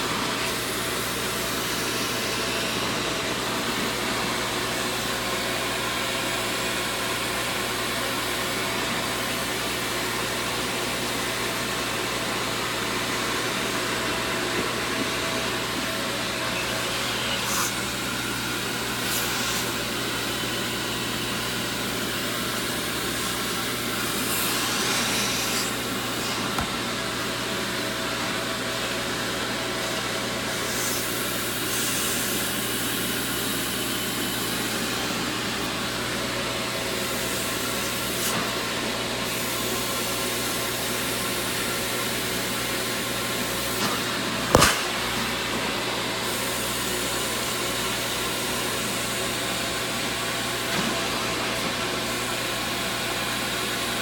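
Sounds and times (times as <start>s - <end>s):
vacuum motor running: 0.0s - 54.0s
sharp knock: 44.5s - 45.0s.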